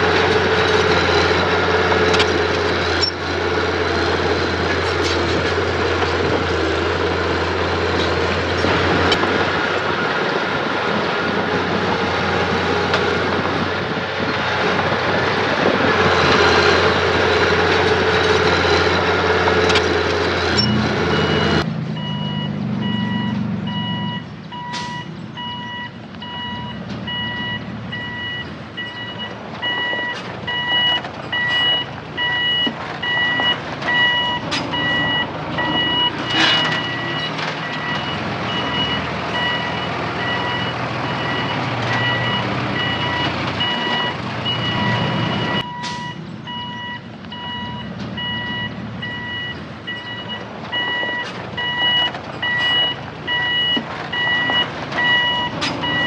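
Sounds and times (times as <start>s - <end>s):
diesel engine running: 0.0s - 56.0s
reversing alarm beeping: 20.5s - 56.0s.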